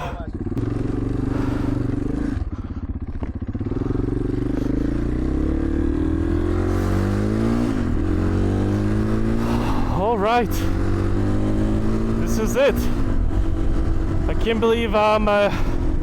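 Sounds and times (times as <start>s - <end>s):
motorcycle engine accelerating: 0.0s - 16.0s.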